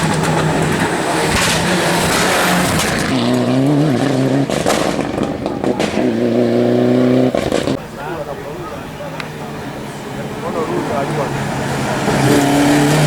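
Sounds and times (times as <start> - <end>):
sharp cracks: 0.0 - 7.8
tyres on loose surface: 0.0 - 7.9
rally car engine: 0.0 - 13.0.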